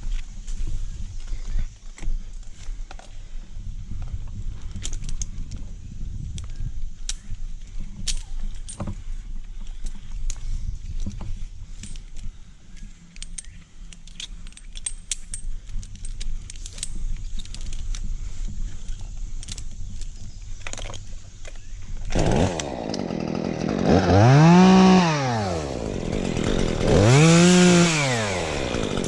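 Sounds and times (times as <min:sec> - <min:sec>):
metal carabiners clinking: 0:07.1 - 0:23.8.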